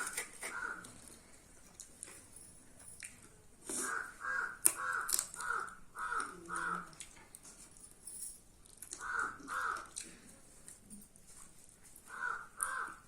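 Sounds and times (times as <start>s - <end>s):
crow cawing: 0.4s - 0.9s, 3.8s - 6.9s, 9.0s - 9.9s, 12.1s - 13.0s.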